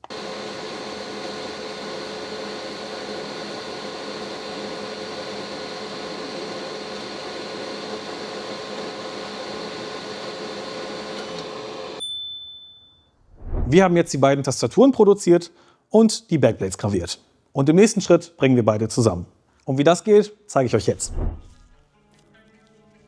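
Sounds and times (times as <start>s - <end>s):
laser engraving machine whirring: 0.0s - 12.0s.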